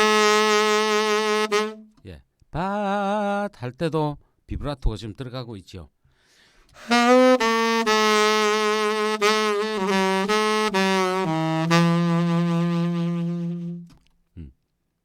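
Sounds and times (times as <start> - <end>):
solo saxophone playing: 0.0 - 2.0, 6.8 - 14.0.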